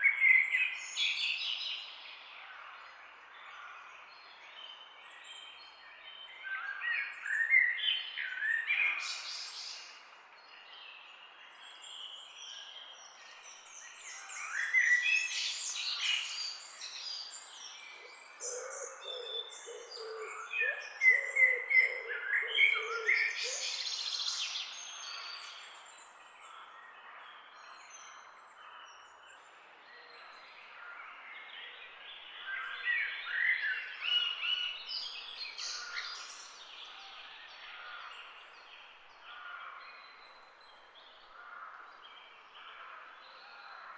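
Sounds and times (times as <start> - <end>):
birds chirping and singing: 11.5 - 43.9.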